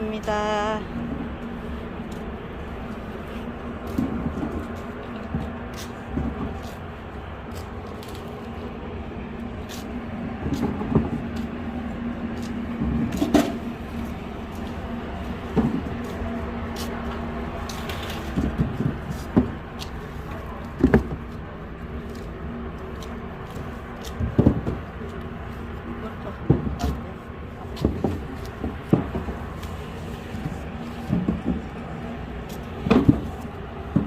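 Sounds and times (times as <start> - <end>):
boxes knocking and clattering: 24.2 - 24.9, 27.7 - 29.4, 30.4 - 31.7, 32.8 - 34.0.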